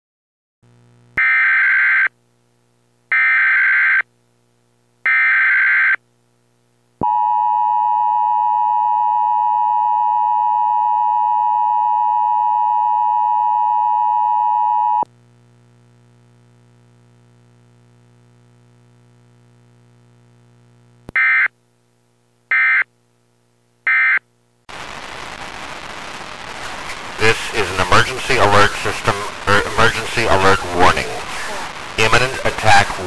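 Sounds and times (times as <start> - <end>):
steady attention signal tone: 7.0 - 15.1.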